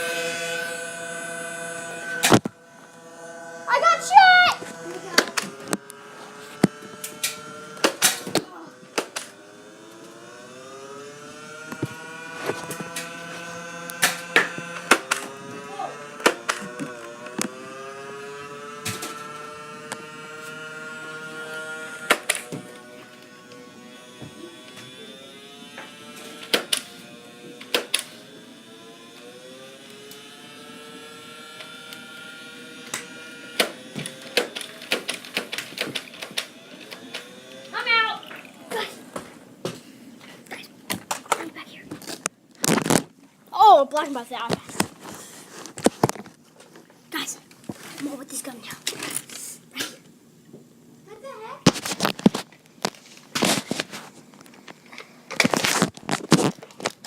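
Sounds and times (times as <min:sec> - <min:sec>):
small electric motor whirring: 0:00.0 - 0:39.2.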